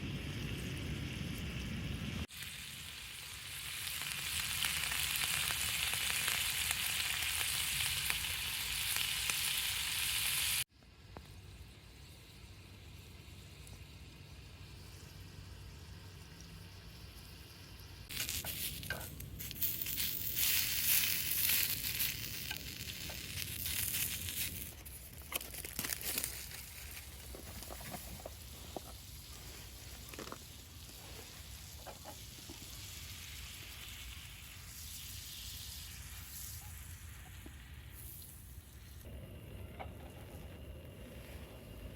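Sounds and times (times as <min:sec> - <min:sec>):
food sizzling in a pan: 0:00.0 - 0:10.7, 0:14.4 - 0:24.8, 0:27.7 - 0:39.0
crackles and clicks: 0:13.4 - 0:41.9.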